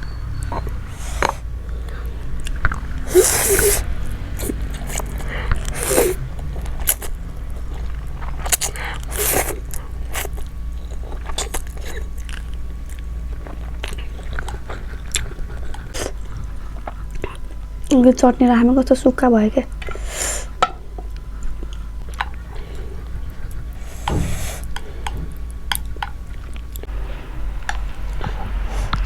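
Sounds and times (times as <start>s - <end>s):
chewing noodles: 0.0s - 29.0s
slurping noodles: 0.5s - 2.1s, 2.7s - 12.6s, 13.3s - 17.7s.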